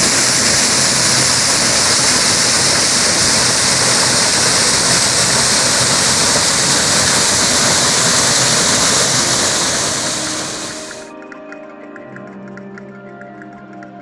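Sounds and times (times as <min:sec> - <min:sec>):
waterfall pouring: 0:00.0 - 0:11.1.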